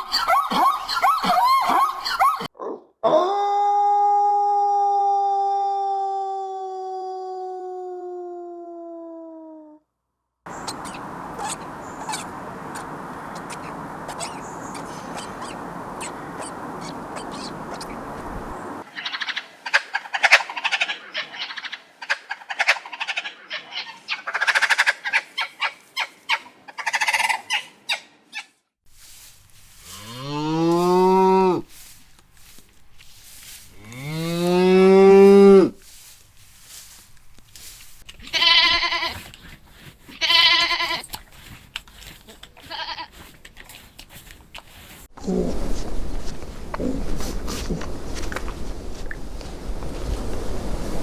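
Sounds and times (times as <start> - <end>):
short sharp animal calls: 10.5 - 19.4
long falling animal call: 10.5 - 19.5, 45.2 - 50.9
cow mooing: 29.9 - 31.7, 33.8 - 35.8.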